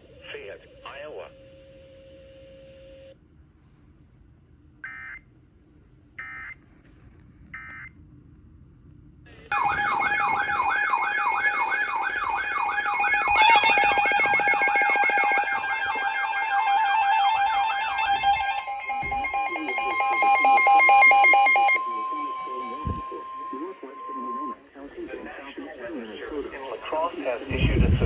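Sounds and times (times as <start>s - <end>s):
warbling electronic alarm: 9.5s - 28.0s
short digital data bursts: 9.6s - 24.5s.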